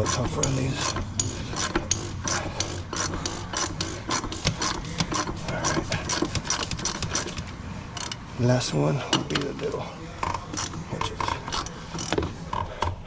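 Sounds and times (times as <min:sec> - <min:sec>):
rubbing: 0:00.0 - 0:07.6
ratchet wrench clicking: 0:00.0 - 0:08.2, 0:10.2 - 0:13.0.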